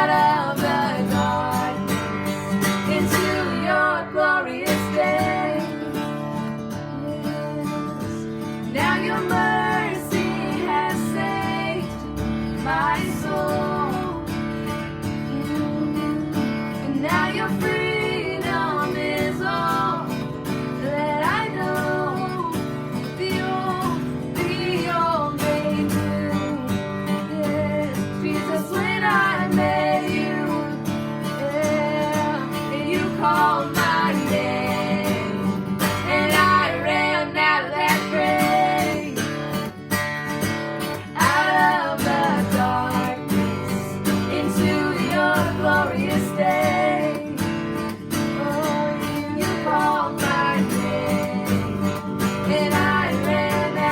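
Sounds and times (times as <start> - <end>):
person singing worship song: 0.0 - 2.0, 2.9 - 6.0, 31.4 - 39.3, 41.1 - 47.4, 48.4 - 53.9
strummed acoustic guitar: 0.0 - 53.9.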